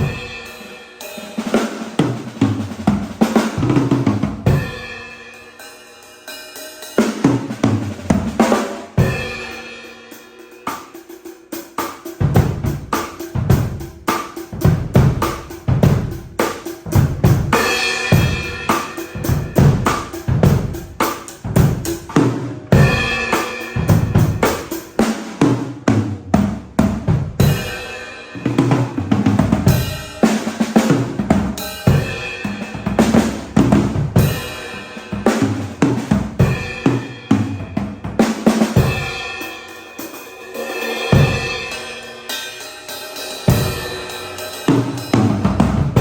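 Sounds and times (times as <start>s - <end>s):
cymbal crashes: 0.0s - 1.9s, 4.5s - 11.3s, 16.4s - 25.2s, 27.4s - 28.7s, 29.6s - 37.7s, 38.5s - 46.0s
kick drum and snare groove: 11.8s - 25.0s.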